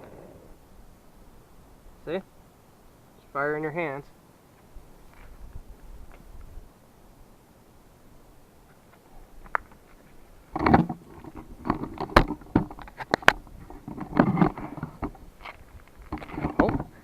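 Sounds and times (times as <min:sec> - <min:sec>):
handling knocks and scrapes: 0:09.5 - 0:17.0.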